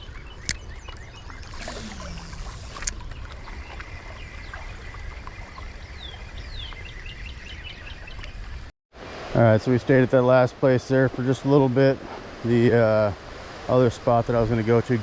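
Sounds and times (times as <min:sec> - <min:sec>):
faint birds chirping: 0:00.0 - 0:08.4
brief hiss: 0:01.6 - 0:02.9
sharp click: 0:01.6 - 0:03.0.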